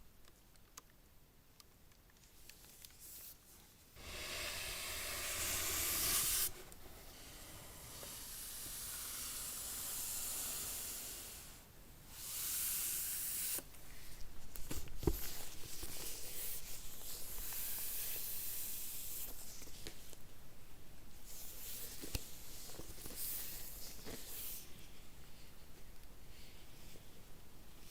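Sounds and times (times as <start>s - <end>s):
packaging rubbing and sliding: 4.0s - 11.5s.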